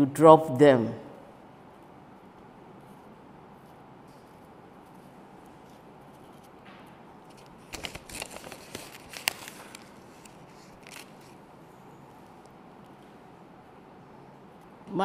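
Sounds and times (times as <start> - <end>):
paper strips crinkling and rustling: 7.2 - 11.4.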